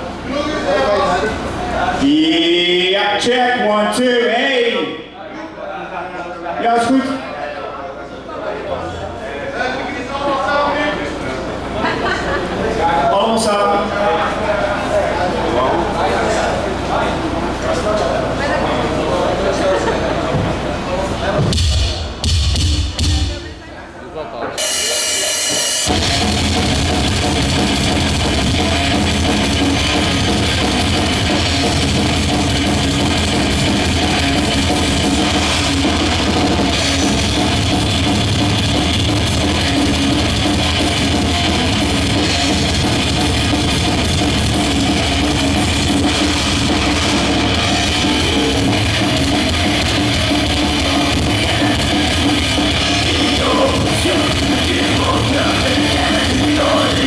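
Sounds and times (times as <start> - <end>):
drum kit with cymbals: 21.4 - 23.6, 24.6 - 57.0
distorted guitars: 24.6 - 57.0
metal band playing live: 24.6 - 57.0.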